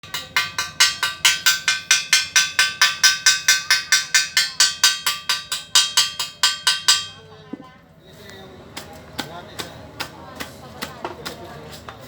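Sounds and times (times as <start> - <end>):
hammer striking metal: 0.0 - 7.6.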